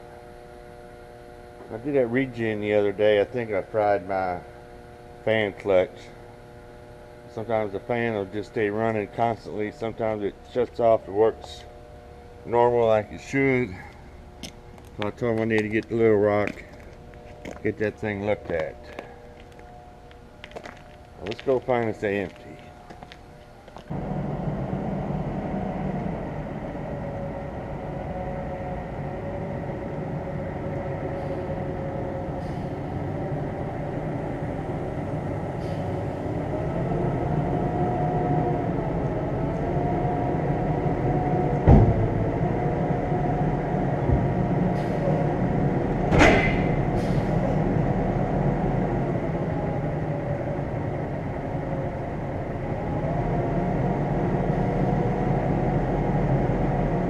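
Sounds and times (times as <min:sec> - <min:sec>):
diesel truck engine running: 0:00.0 - 0:57.0
sharp knocks: 0:41.6 - 0:42.1.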